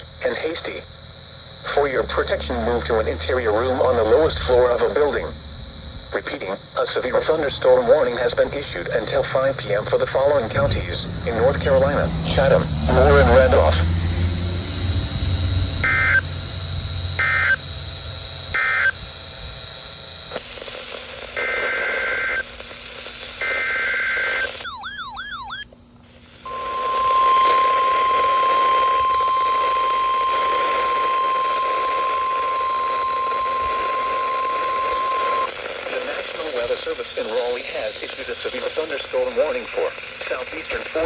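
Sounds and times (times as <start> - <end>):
steady alarm tone: 0.0 - 35.6
chirping data bursts: 0.0 - 35.9
radio hiss: 0.0 - 41.0
wavering tone: 26.5 - 35.2.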